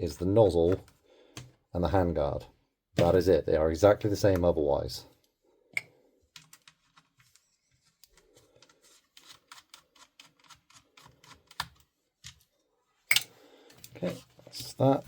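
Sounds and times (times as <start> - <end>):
faint clicks and taps of tool: 0.8 - 1.6.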